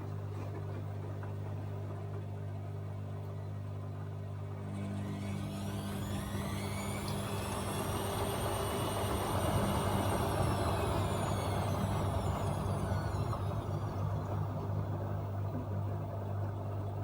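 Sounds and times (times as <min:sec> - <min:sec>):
washing machine motor whine: 0:04.3 - 0:17.0
steady low hum: 0:04.7 - 0:17.0.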